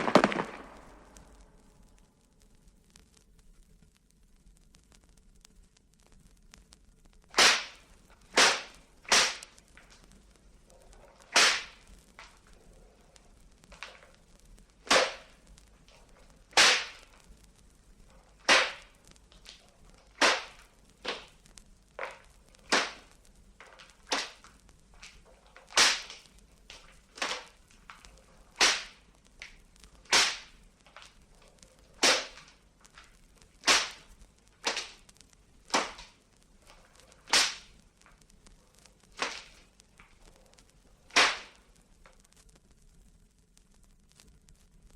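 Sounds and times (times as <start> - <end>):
whip cracking: 0.0 - 1.4, 7.3 - 9.9, 10.9 - 12.3, 14.8 - 17.2, 18.3 - 21.4, 22.0 - 35.0, 35.7 - 37.8, 39.1 - 39.7, 41.1 - 41.6.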